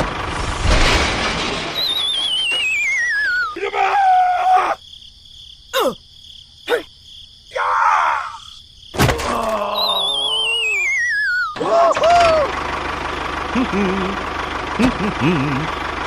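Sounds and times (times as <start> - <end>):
wavering falling whistle: 1.7 - 3.6, 9.8 - 11.6
groaning voice-like sounds: 5.8 - 6.0, 6.7 - 6.9, 9.1 - 10.9, 14.8 - 15.8.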